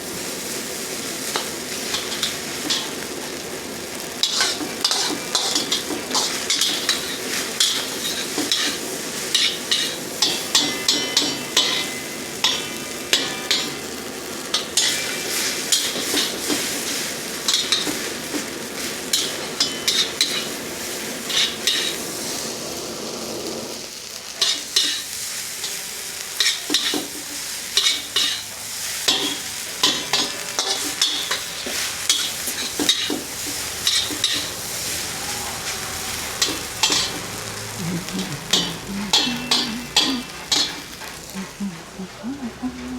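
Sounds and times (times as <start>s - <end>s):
food sizzling in a wok: 0.0s - 42.9s
metal ladle scraping a wok: 29.1s - 37.4s.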